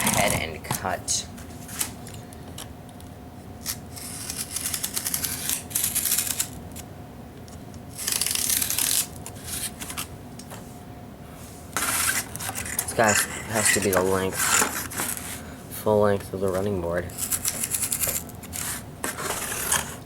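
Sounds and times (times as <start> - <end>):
knife cutting cardboard: 8.0 - 9.8, 11.8 - 15.4, 17.2 - 20.0.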